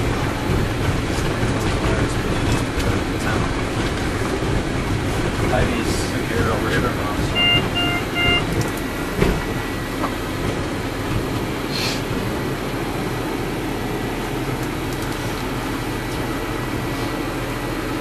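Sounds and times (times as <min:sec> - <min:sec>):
moving ambulance rumble: 0:00.0 - 0:18.0
short hiss: 0:11.7 - 0:12.0.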